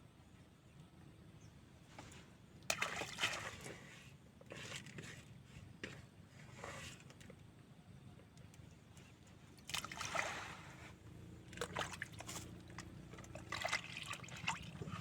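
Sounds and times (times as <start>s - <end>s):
water sloshing and splashing: 2.7s - 5.0s, 9.5s - 15.0s.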